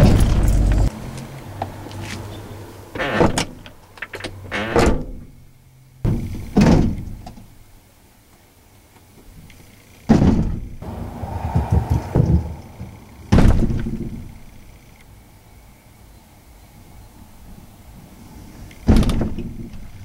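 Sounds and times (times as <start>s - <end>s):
heavy thunks: 10.1s - 14.3s.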